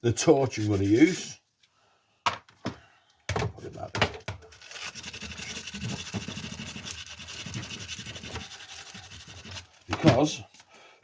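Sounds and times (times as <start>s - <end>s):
wood scratching and rubbing: 4.5s - 10.3s.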